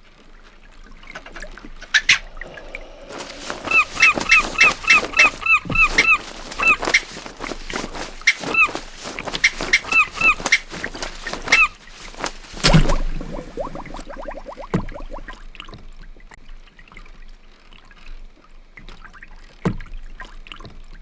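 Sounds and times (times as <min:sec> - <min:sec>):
short squeaks: 0:03.1 - 0:14.0.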